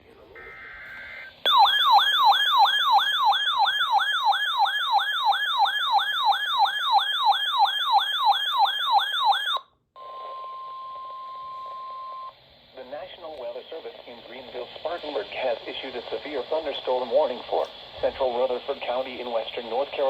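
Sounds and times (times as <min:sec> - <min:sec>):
steady single-pitch warning tone: 0:00.4 - 0:04.5, 0:09.4 - 0:12.4
electronic siren alarm sweeping down: 0:00.4 - 0:12.3.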